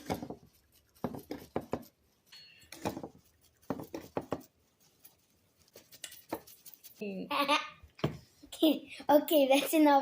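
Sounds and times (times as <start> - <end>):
seasoning shaker rattling: 0.0 - 7.0.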